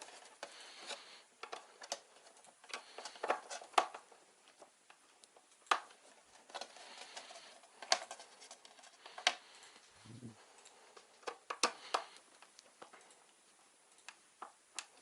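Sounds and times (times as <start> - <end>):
clicks of handling computer parts: 0.0 - 9.4.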